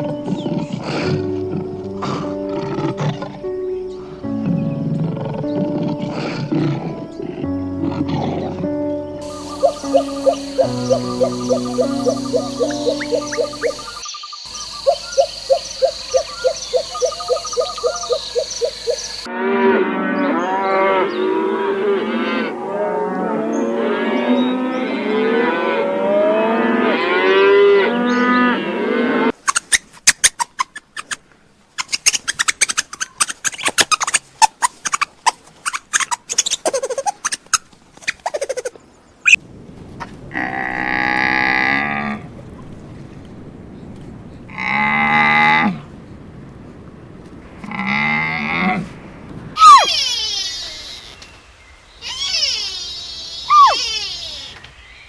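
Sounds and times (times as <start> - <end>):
cattle mooing: 0.0 - 3.5, 4.2 - 14.0.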